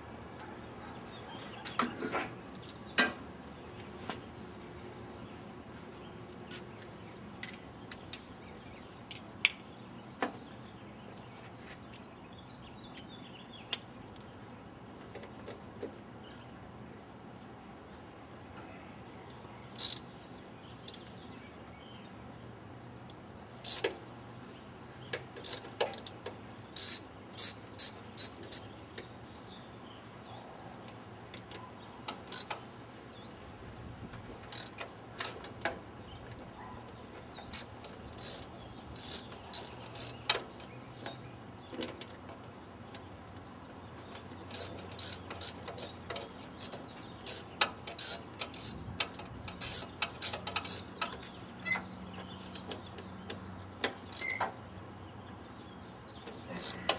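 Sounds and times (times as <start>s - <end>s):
ratchet wrench clicking: 19.8s - 20.0s, 23.6s - 23.9s, 25.4s - 26.2s, 26.8s - 28.7s, 32.3s - 32.6s, 34.5s - 34.8s, 37.5s - 40.4s, 44.5s - 51.2s, 54.1s - 54.4s, 56.5s - 56.9s.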